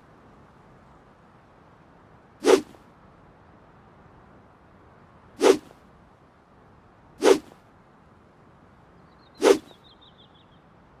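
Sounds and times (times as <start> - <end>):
sword swing whoosh: 2.4 - 2.8, 5.4 - 5.8, 7.2 - 7.6, 9.4 - 9.7.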